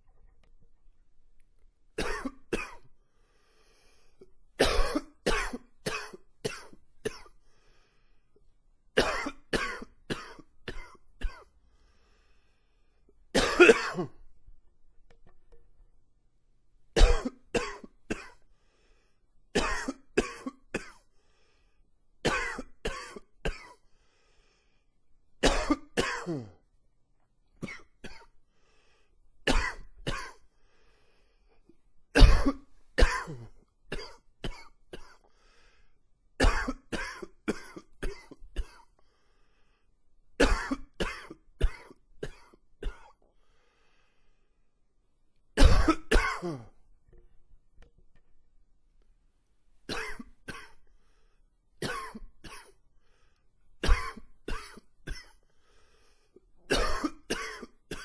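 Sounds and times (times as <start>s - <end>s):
man coughing: 2.0s - 2.9s, 4.6s - 7.3s, 9.0s - 11.5s, 13.4s - 14.2s, 25.4s - 26.6s, 32.2s - 35.2s, 40.4s - 43.1s, 45.6s - 46.8s, 49.9s - 50.8s, 51.8s - 52.8s, 56.7s - 58.0s.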